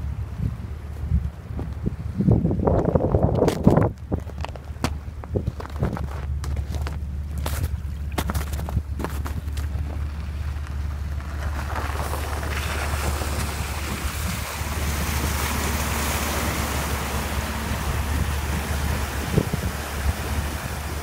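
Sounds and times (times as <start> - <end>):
constant low hum: 0.0 - 21.0
floodwater rushing: 5.9 - 21.0.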